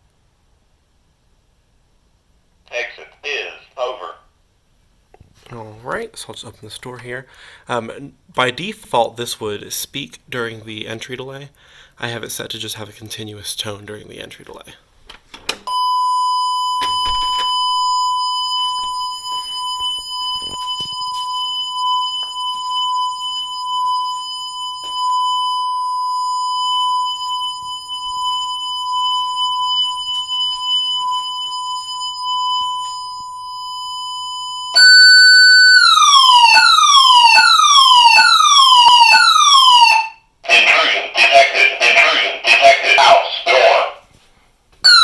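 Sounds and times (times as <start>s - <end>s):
alarm panel warning tone: 15.7s - 40.2s
alarm siren sweeps: 15.7s - 40.2s.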